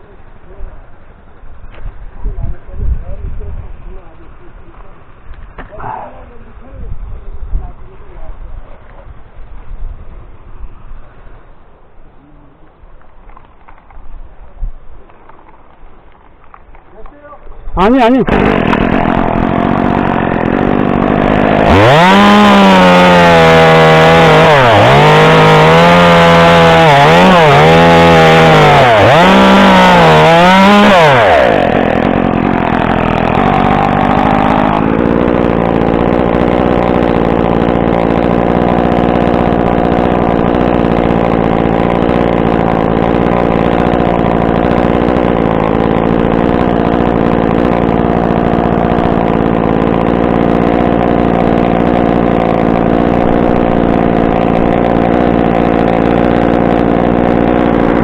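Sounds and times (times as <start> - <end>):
chainsaw cutting wood: 17.8 - 58.0
chainsaw idling: 17.8 - 58.0.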